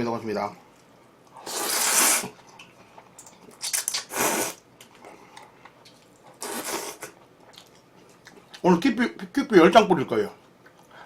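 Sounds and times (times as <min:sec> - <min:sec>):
hissing slurps: 0:01.4 - 0:02.4, 0:04.0 - 0:04.6.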